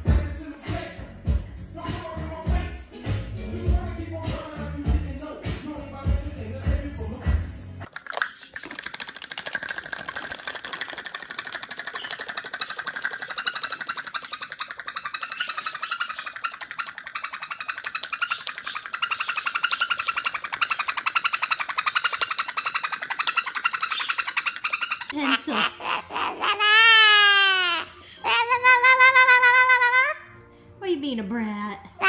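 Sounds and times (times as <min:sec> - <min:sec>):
parrot buzzy chattering: 0:08.1 - 0:30.2.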